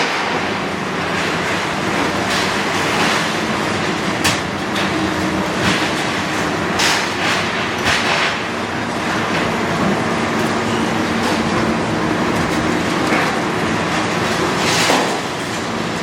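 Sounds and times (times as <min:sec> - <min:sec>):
crunching and clanking debris: 0:06.8 - 0:15.6
diesel engine running: 0:08.5 - 0:14.9.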